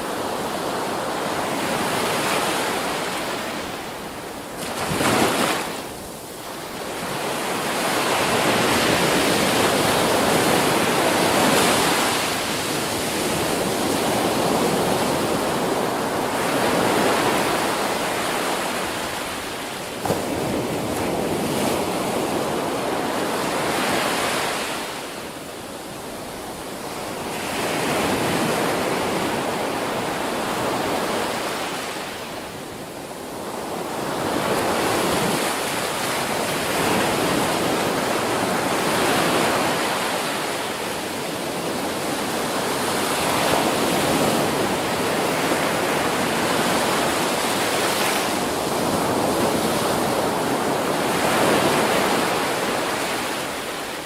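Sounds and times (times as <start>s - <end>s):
ocean waves breaking on beach: 0.0s - 54.0s.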